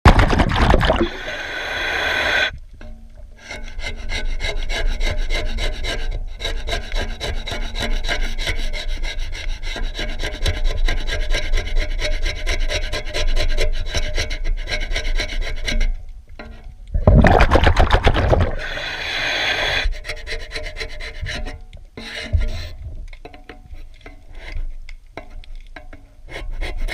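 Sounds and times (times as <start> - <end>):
brush scraping boat hull: 3.4 - 16.6, 17.7 - 26.9.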